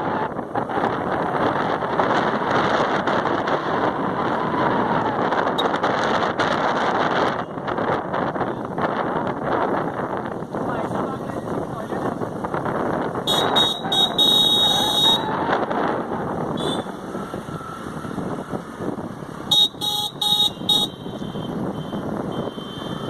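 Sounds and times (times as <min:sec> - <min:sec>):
rushing road noise: 0:00.0 - 0:23.0
vehicle horn honking: 0:13.3 - 0:15.3, 0:16.6 - 0:17.0, 0:19.5 - 0:23.0.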